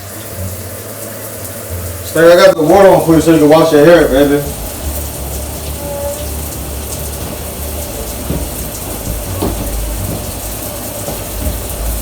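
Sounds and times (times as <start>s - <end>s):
water running from tap: 0.0s - 12.0s
faint knocks: 4.8s - 12.0s.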